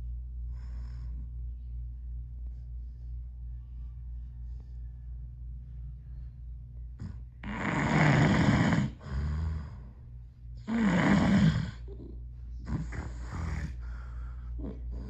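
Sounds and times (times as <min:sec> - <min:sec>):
soft breath: 0:00.3 - 0:01.9, 0:13.0 - 0:15.0
man snoring loudly: 0:07.4 - 0:09.8, 0:10.6 - 0:11.8, 0:12.7 - 0:13.8.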